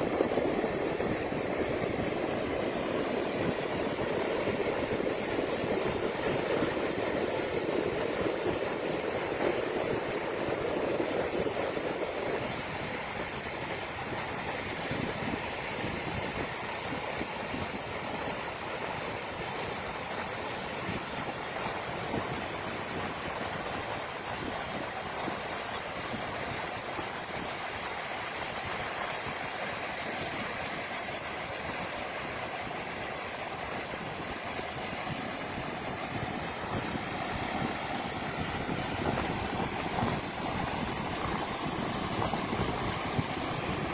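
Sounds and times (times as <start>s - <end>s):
ocean waves breaking: 0.0s - 43.9s.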